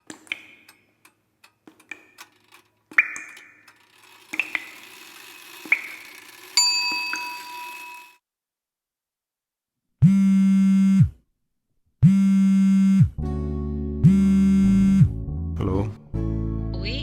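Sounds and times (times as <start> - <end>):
sparse ticks: 0.0 - 6.6
bell-like chime: 6.6 - 8.2
light metallic dings: 6.6 - 8.2.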